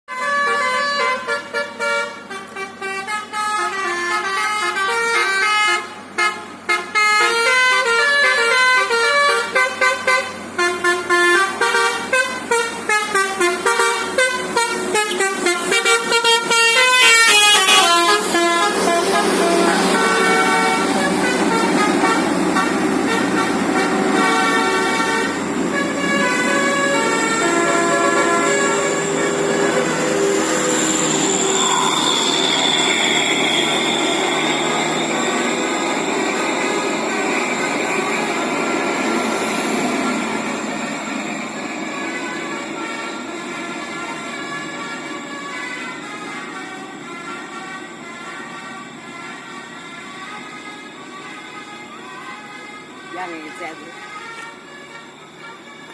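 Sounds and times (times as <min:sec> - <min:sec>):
multi-tone bus horn notes: 0:00.1 - 0:55.9.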